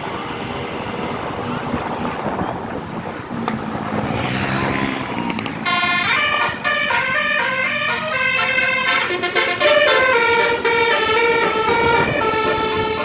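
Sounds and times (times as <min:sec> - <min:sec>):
vehicle engine and road noise: 0:00.0 - 0:13.0
multi-note bus horn melody: 0:05.6 - 0:13.0.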